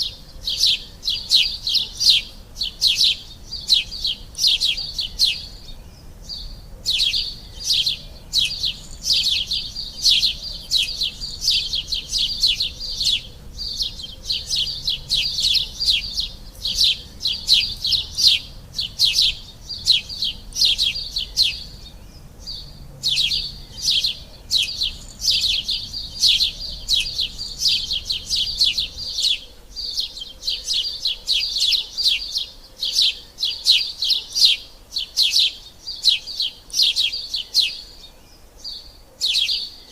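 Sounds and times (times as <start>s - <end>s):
sparrows chirping: 0.0s - 39.9s.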